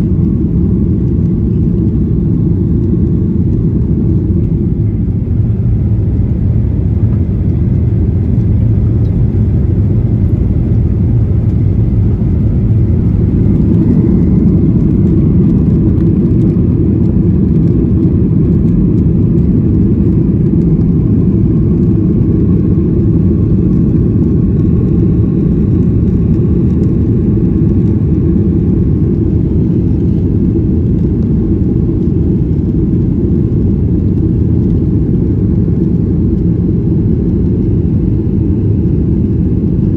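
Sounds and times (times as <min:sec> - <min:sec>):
jet engines rumbling in cabin: 0:00.0 - 0:39.9.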